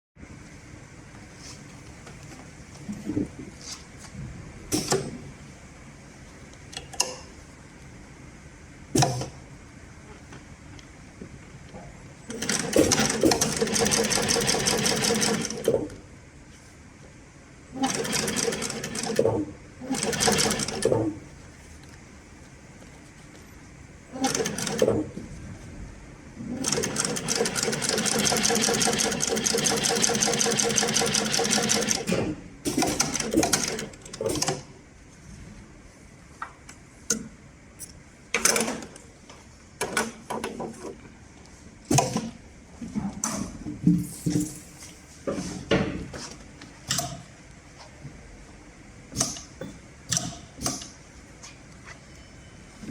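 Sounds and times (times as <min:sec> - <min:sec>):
sewing machine stitching: 0:12.3 - 0:15.8, 0:17.8 - 0:21.2, 0:24.2 - 0:25.1, 0:26.5 - 0:34.5.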